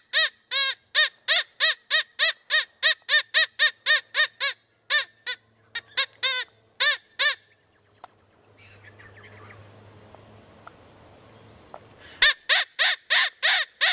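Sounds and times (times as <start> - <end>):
faint hiss: 8.1 - 12.4.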